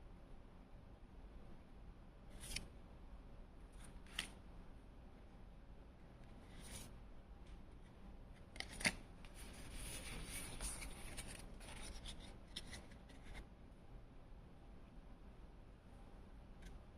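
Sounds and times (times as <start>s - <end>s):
cards rustling: 2.4s - 2.7s, 8.6s - 13.4s.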